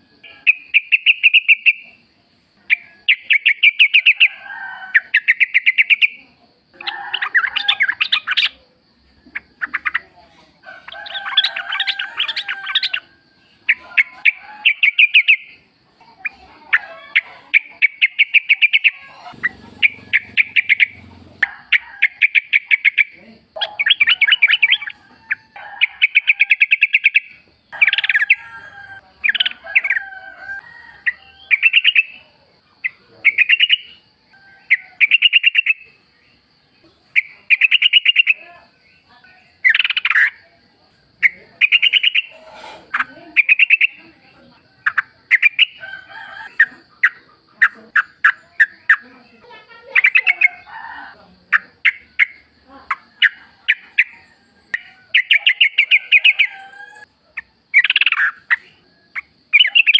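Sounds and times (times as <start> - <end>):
birds chattering calls: 9.2 - 59.9.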